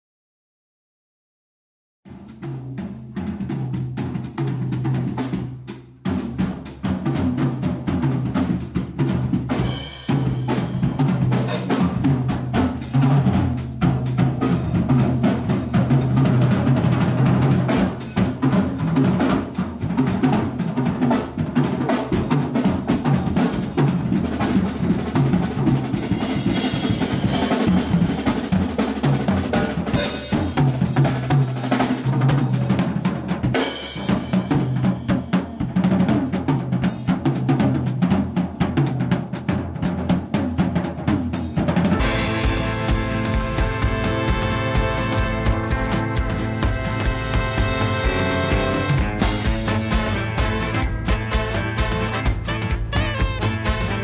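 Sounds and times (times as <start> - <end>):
band music: 2.1 - 54.0
busy drum kit: 2.1 - 54.0
sustained low bass line: 42.0 - 54.0.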